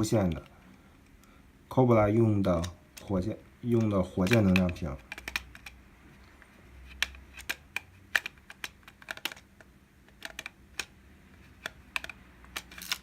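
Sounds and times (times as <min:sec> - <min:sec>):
plastic toy parts clicking: 0:02.6 - 0:05.8, 0:06.8 - 0:13.0.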